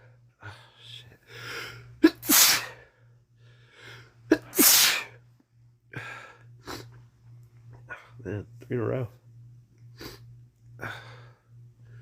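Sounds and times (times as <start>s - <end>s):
breaths: 0.0s - 2.0s, 2.7s - 4.2s, 5.9s - 7.0s, 9.9s - 12.0s
man sneezing: 2.0s - 2.8s, 4.3s - 5.2s.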